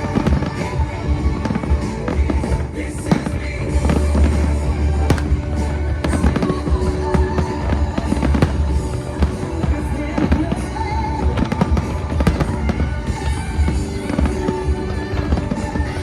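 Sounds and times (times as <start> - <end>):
fireworks bangs and crackles: 0.0 - 16.0
low rumble: 0.0 - 16.0
music over loudspeakers: 0.0 - 16.0.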